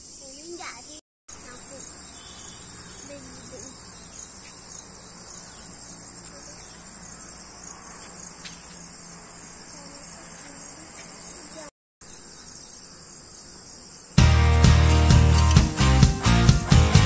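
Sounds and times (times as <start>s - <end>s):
insect chorus trilling: 0.0s - 14.2s.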